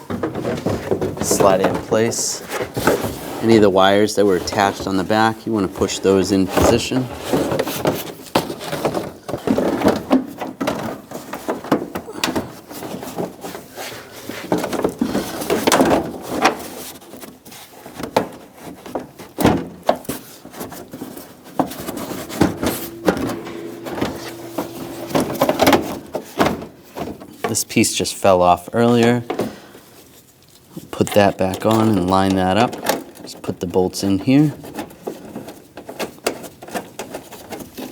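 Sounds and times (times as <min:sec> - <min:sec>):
plastic scraping and rustling: 0:00.0 - 0:27.9, 0:28.8 - 0:37.9
knocks and clicks: 0:22.5 - 0:25.8.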